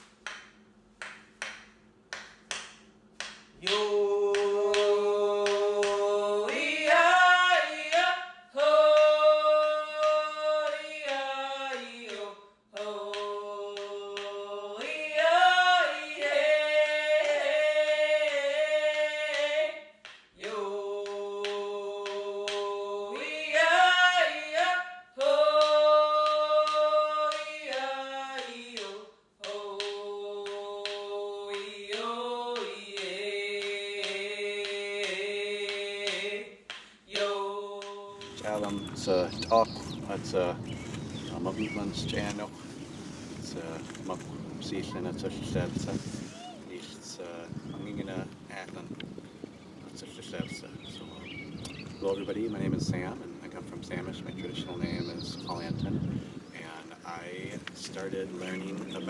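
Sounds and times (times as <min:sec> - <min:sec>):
person singing: 0:20.4 - 0:39.0.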